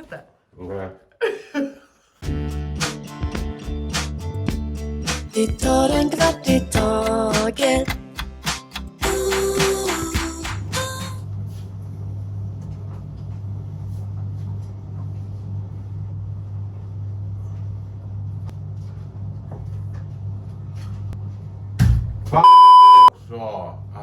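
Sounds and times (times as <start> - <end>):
low electrical hum: 11.2 - 24.0
loud high electronic beep: 22.4 - 23.1.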